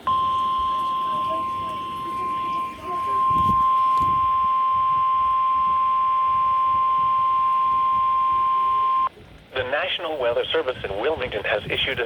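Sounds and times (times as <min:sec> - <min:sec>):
steady alarm tone: 0:00.0 - 0:09.1
faint radio static: 0:01.0 - 0:12.0.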